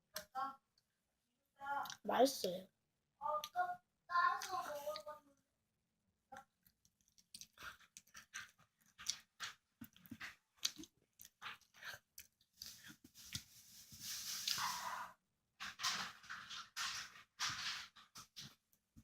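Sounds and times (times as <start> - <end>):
chewing food: 6.3 - 13.6.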